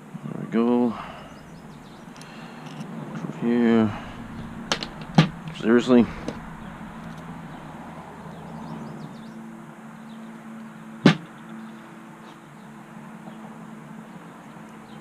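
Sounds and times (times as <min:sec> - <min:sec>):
steady low hum: 0:00.6 - 0:09.9.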